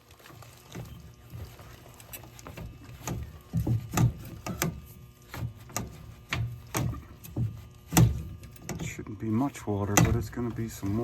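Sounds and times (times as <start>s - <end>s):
copper pipe being cut by hand: 0.6s - 9.0s.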